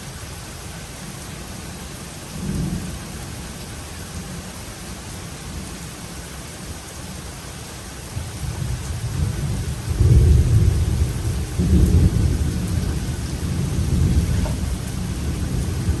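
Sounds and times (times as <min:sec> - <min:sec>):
steady rain: 0:00.0 - 0:16.0
thunder rumbling: 0:08.4 - 0:16.0.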